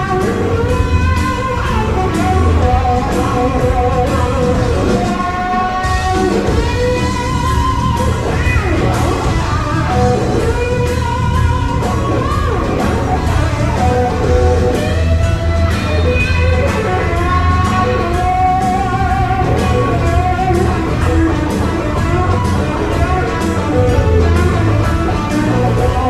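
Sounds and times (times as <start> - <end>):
drums: 0.0 - 26.0
electric guitar with bent notes: 0.0 - 26.0
steady bass line: 0.0 - 26.0.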